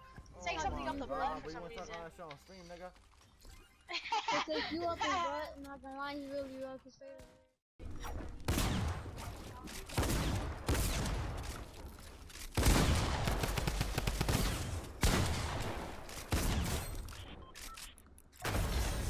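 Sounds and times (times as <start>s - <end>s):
rapid gunfire bursts: 8.5s - 19.0s.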